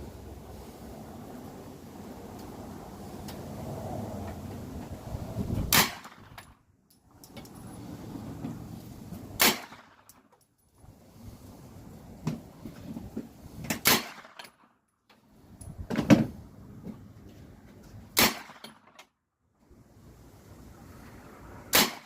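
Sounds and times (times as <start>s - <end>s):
submachine gun shots: 9.4s - 10.0s, 13.8s - 14.4s, 18.2s - 18.8s, 21.7s - 22.0s.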